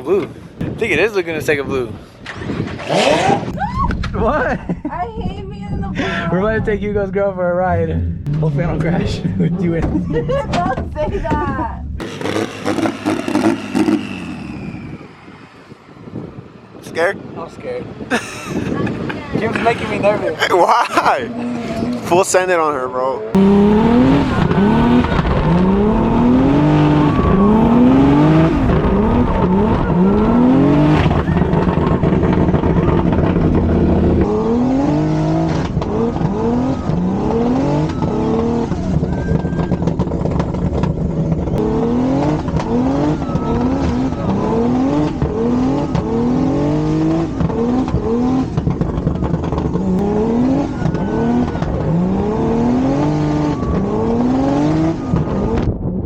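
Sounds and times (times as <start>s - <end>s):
tire noise: 0.0s - 56.0s
car engine revving hard: 12.0s - 15.1s, 23.3s - 39.0s, 40.0s - 55.7s.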